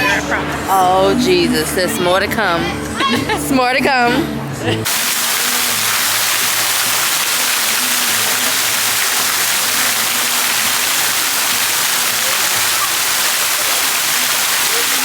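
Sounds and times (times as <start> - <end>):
falling water rushing: 4.9 - 15.0.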